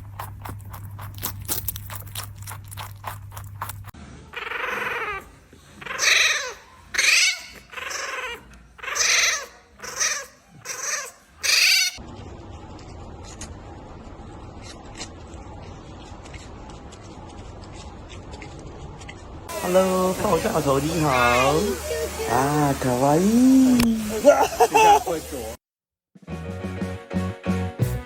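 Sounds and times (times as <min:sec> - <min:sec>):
animal calling: 0:02.8 - 0:12.0.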